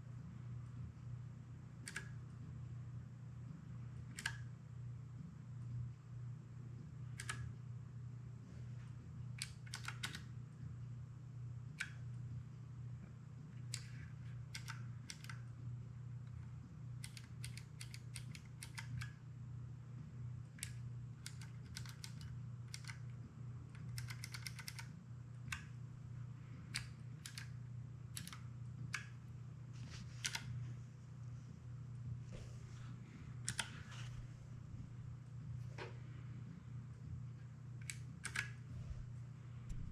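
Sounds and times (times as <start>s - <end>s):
steady low hum: 0.0s - 39.9s
mechanical keyboard key clicks: 9.4s - 10.3s, 13.7s - 15.4s, 17.0s - 19.1s, 20.6s - 23.0s, 23.8s - 24.9s, 26.8s - 27.5s, 28.2s - 29.1s, 37.8s - 38.6s.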